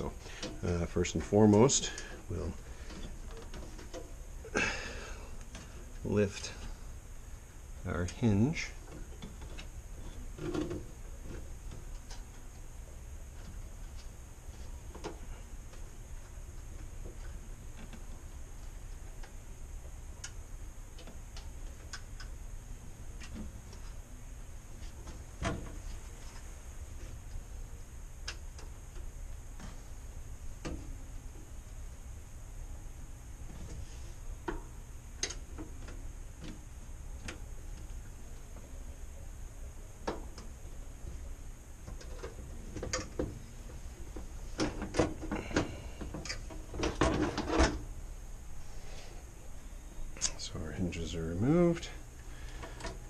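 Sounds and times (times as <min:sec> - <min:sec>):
low steady hum: 0:00.0 - 0:53.0.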